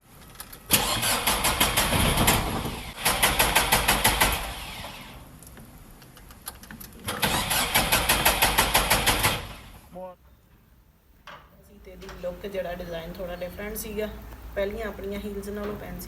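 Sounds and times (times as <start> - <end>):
car engine cranking on starter: 0.7 - 5.2, 7.1 - 9.7.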